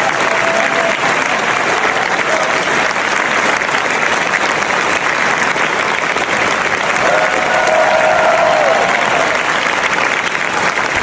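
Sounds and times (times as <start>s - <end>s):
crowd applauding: 0.0s - 11.0s.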